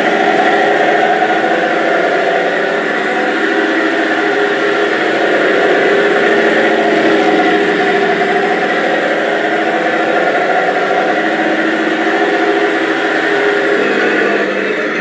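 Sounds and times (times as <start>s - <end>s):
toy speaker engine idling: 0.0s - 15.0s.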